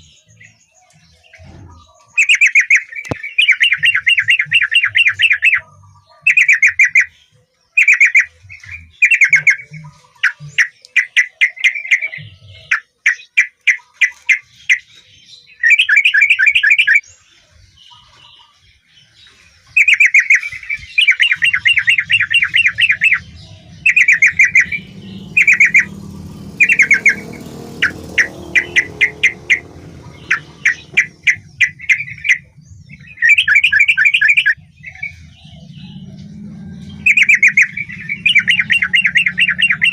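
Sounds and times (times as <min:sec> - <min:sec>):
bird singing chattering phrases: 0:00.0 - 0:39.9
low rumble: 0:21.4 - 0:33.3, 0:34.6 - 0:39.9.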